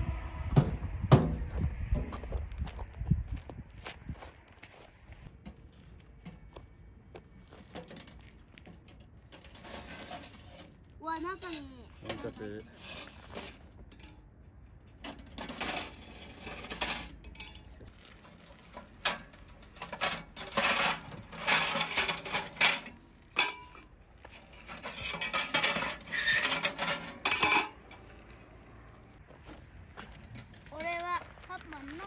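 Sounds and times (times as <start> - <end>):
sheet metal parts clanking and scraping: 7.6 - 31.2.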